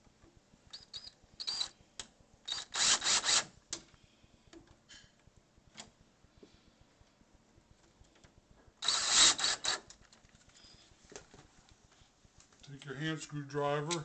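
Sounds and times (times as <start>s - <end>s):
screwdriver clicking and rasping: 0.7s - 3.8s, 8.8s - 10.0s.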